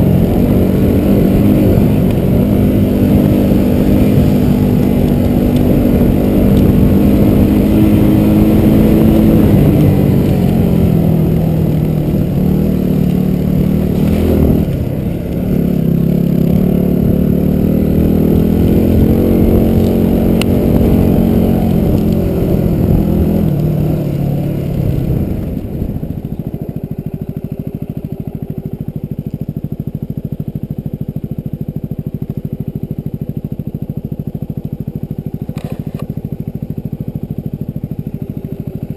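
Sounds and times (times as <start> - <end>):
motorcycle engine idling: 0.0 - 38.9
motorcycle engine revving: 0.0 - 38.9.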